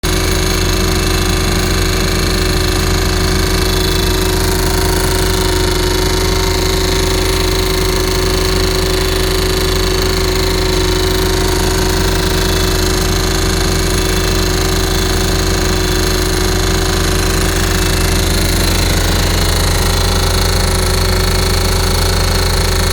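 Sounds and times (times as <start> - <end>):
engine drone: 0.0 - 22.9
rock drill rattling: 0.0 - 22.9.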